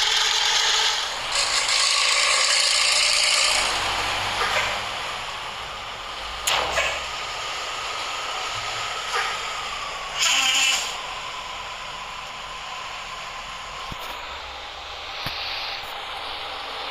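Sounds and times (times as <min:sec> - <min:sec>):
truck engine whine: 0:00.0 - 0:16.9
air hiss: 0:15.0 - 0:16.8.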